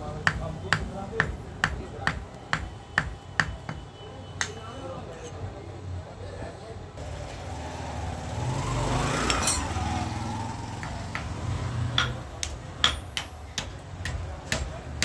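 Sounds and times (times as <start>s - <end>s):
hammer blows on metal: 10.8s - 15.0s.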